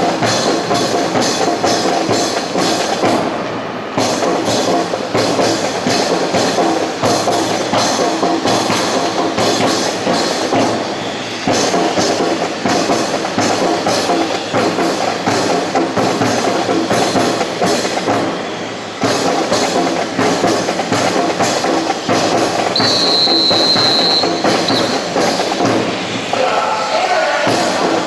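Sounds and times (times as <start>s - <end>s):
busy background noise: 0.0s - 28.0s
high whistle-like tone: 22.7s - 25.0s.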